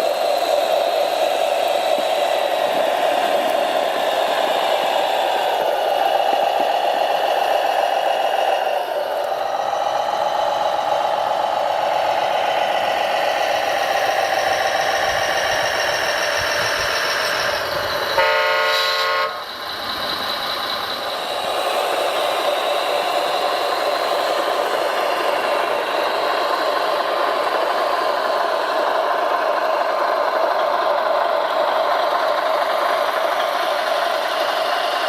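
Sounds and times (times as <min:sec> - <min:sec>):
horn toot: 0:18.2 - 0:19.4.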